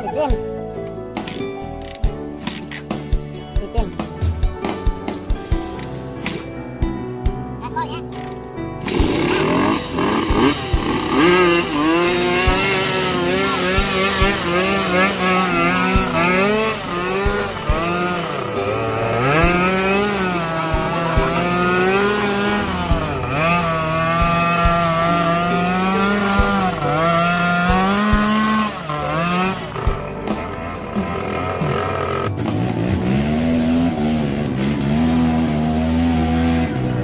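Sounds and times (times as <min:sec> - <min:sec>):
motorcycle engine revving: 0:08.1 - 0:37.0.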